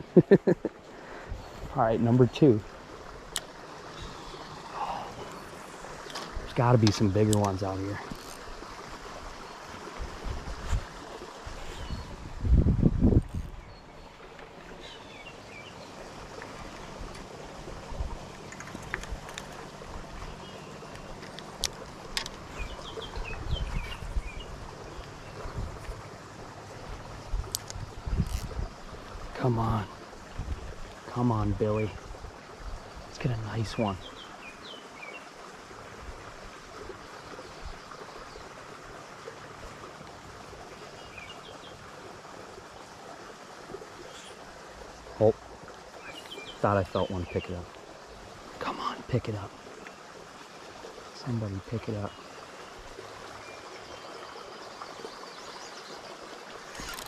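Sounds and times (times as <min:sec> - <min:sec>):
faint clicks: 0:06.0 - 0:08.4, 0:27.5 - 0:28.5
low wind buffet: 0:10.0 - 0:13.7, 0:21.1 - 0:26.0.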